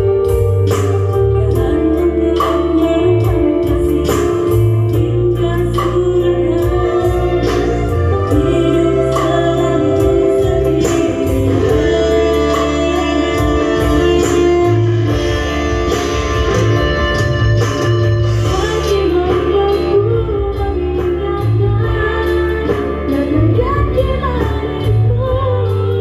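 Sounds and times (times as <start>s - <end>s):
steady drum beat: 0.0s - 25.1s
electronic organ music: 0.0s - 26.0s
person singing: 1.4s - 15.4s.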